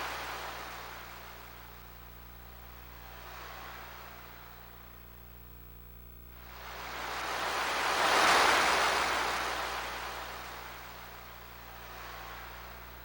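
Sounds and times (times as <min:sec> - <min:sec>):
rushing swell of noise: 0:06.4 - 0:13.0.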